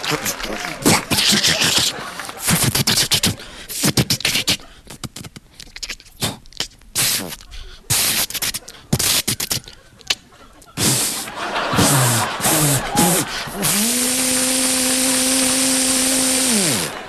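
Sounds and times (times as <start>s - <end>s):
mouth clicks and tongue snaps: 0.4s - 10.8s
mouth hissing blasts: 2.4s - 5.3s, 6.2s - 9.7s, 10.8s - 17.0s.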